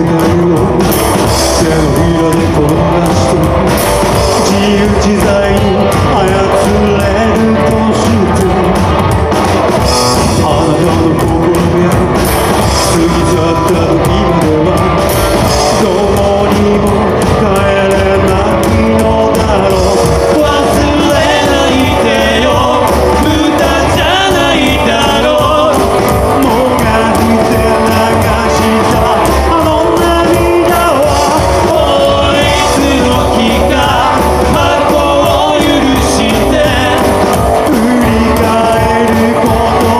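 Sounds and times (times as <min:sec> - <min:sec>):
drums: 0:00.0 - 0:39.9
guitar: 0:00.0 - 0:39.9
singer: 0:00.0 - 0:39.9.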